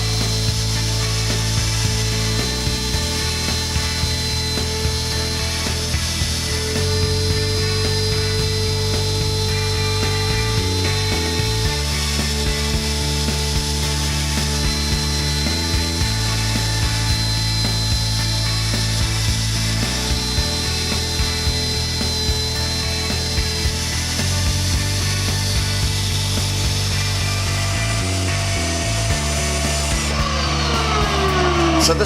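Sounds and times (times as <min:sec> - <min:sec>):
background music: 0:00.0 - 0:32.0
router cutting wood: 0:00.0 - 0:32.0.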